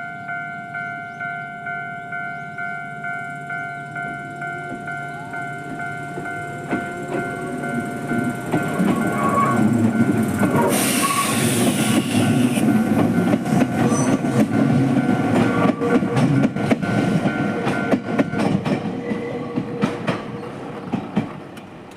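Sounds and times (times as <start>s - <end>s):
crossing warning signal tone: 0.0s - 19.7s
train wheels clacking: 4.4s - 21.9s.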